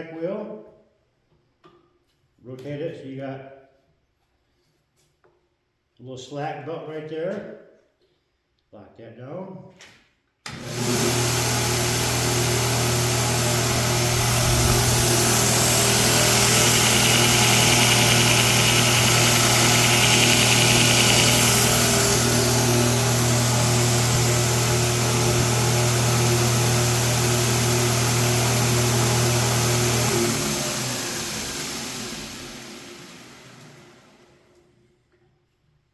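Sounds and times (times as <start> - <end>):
belt grinder motor running: 10.6 - 33.7
sanding belt hiss: 14.1 - 23.2.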